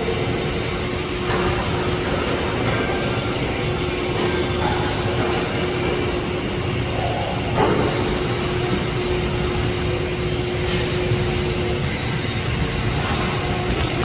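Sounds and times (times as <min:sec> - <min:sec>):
steady hum: 0:00.0 - 0:14.0
welding arc crackling hiss: 0:10.5 - 0:14.0.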